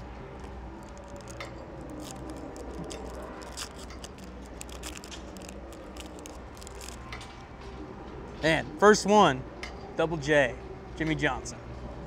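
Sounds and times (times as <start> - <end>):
card pack wrapper crinkling: 0.0 - 7.1
low steady hum: 0.0 - 8.7.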